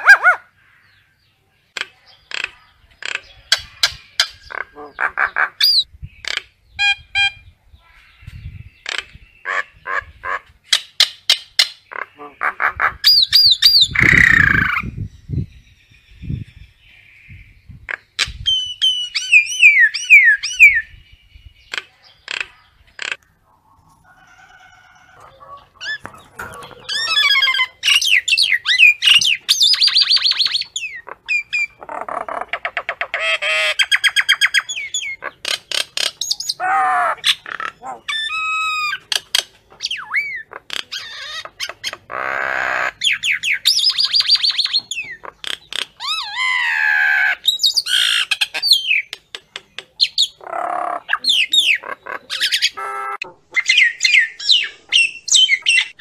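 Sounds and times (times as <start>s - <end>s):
myna whistling and chattering: 25.5s - 35.2s.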